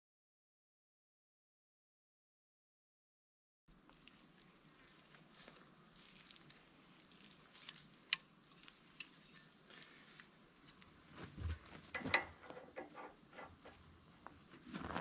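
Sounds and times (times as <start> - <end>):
knocks and clatter: 11.4 - 13.8.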